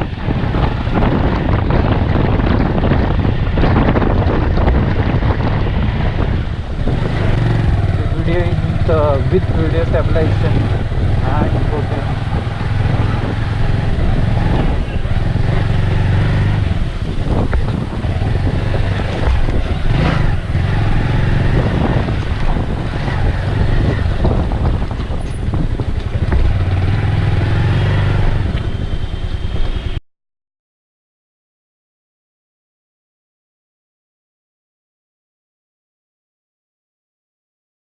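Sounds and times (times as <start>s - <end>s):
road and engine rumble: 0.0s - 30.0s
wind buffeting: 0.0s - 30.0s.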